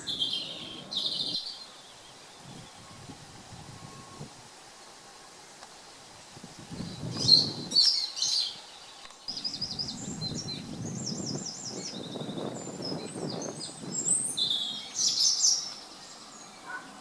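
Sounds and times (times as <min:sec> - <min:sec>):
songbirds calling and singing: 0:00.0 - 0:03.1, 0:06.5 - 0:17.0.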